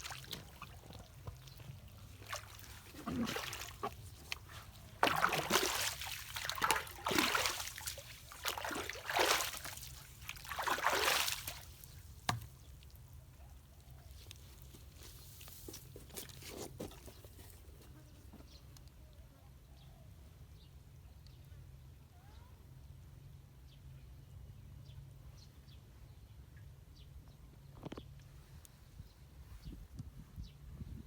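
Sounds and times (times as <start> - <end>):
water trickling: 0.0 - 13.2
water sloshing and splashing: 0.0 - 17.6.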